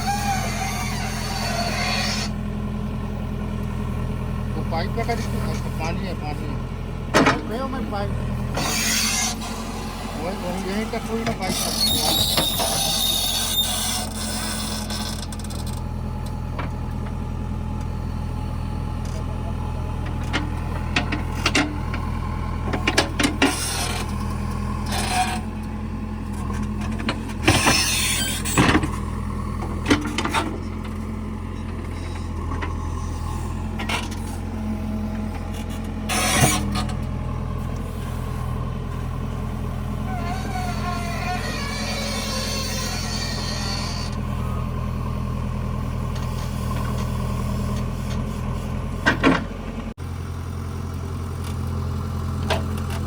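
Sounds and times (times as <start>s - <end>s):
diesel engine running: 0.0s - 53.0s
digging knocks and scraping: 7.1s - 15.8s, 22.7s - 25.4s, 26.3s - 34.5s, 35.2s - 38.2s.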